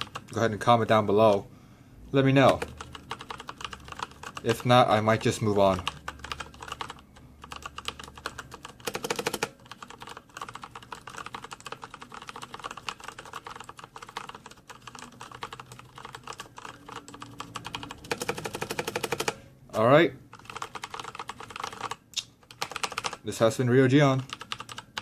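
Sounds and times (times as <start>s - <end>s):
mechanical keyboard typing: 0.0s - 1.4s, 2.3s - 19.4s, 20.3s - 23.4s, 24.2s - 25.0s.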